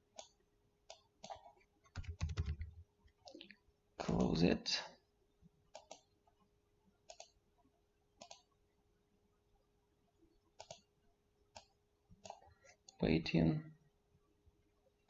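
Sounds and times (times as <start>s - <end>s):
computer mouse clicks: 0.0s - 3.6s, 5.7s - 6.2s, 7.0s - 7.4s, 8.2s - 8.6s, 10.5s - 10.9s, 11.5s - 13.0s
faint steady hum: 0.0s - 15.0s.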